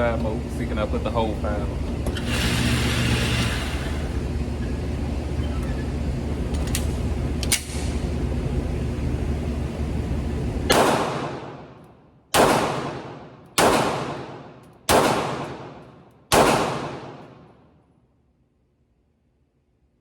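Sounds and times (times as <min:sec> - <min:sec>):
pistol shots echoing: 0:10.7 - 0:11.7, 0:12.3 - 0:17.5.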